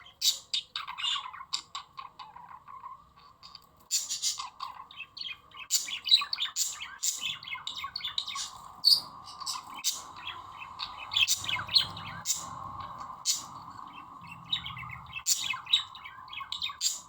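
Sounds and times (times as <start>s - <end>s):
budgerigars chattering: 0.0s - 17.0s.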